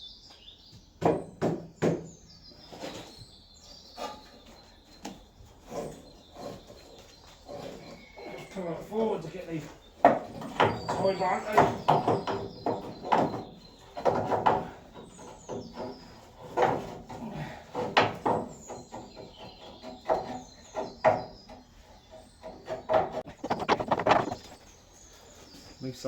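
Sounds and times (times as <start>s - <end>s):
metal clanks and knocks: 3.9s - 24.6s.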